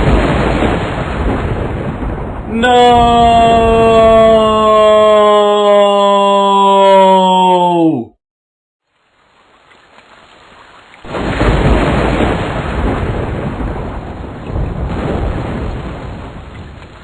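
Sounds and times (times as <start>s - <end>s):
thunder crack and rumble: 0.0s - 5.3s, 11.0s - 17.0s
rain falling: 0.0s - 5.7s, 8.8s - 17.0s.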